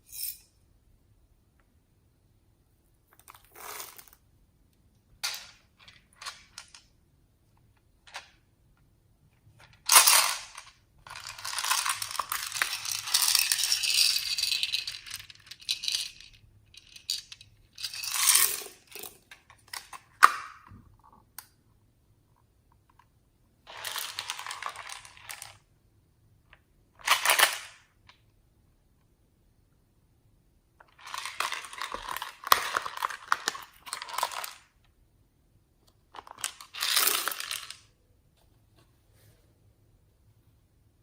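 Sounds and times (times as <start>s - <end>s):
packaging rattling and rustling: 31.0s - 34.6s.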